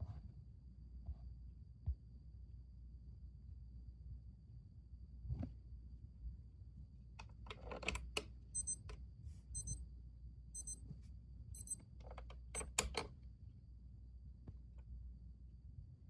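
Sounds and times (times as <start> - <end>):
alarm clock beeping: 8.6 - 8.8, 9.6 - 9.8, 10.6 - 10.8, 11.6 - 11.8.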